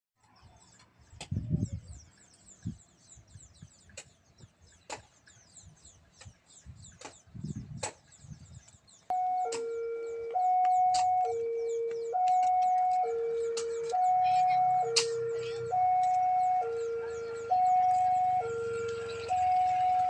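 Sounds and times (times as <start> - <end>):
level crossing two-tone alarm: 9.1 - 20.0.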